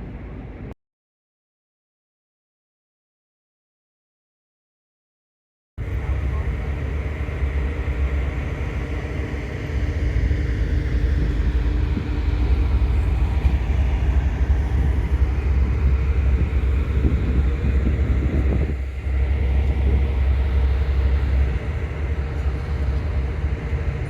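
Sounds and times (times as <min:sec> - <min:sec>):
boat engine rumble: 0:00.0 - 0:00.7, 0:05.8 - 0:24.0.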